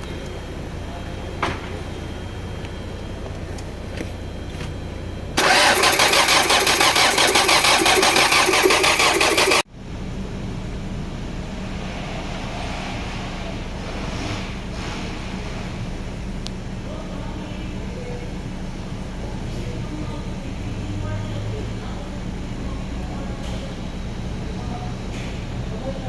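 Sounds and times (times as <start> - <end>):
engine cranking on starter motor: 5.4 - 9.7.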